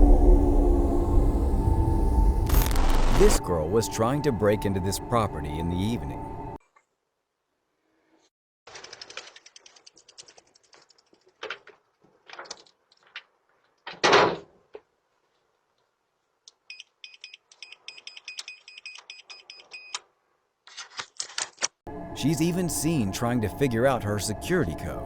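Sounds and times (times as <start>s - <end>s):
door keypad beeps: 16.7s - 20.0s.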